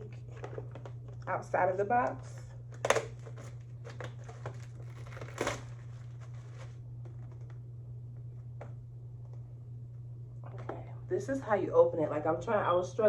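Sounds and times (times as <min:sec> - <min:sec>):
steady low hum: 0:00.0 - 0:13.0
paperboard box crinkling: 0:02.8 - 0:07.5.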